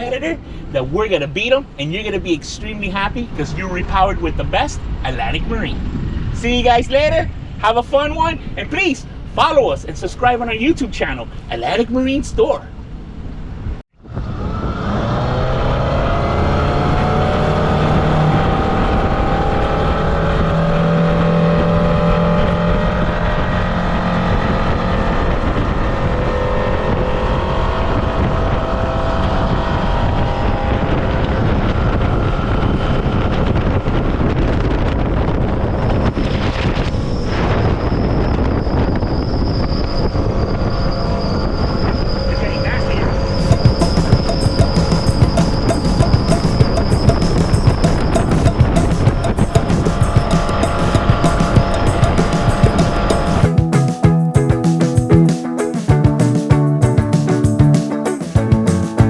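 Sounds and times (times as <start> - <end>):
wind on microphone: 25.2 - 53.4
high thin steady tone: 43.4 - 59.0.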